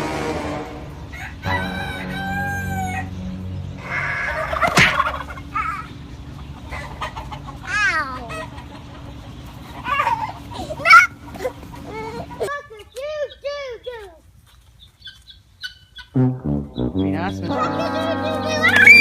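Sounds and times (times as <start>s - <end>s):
chickens clucking: 0.9s - 19.0s
rooster crowing: 1.1s - 3.1s.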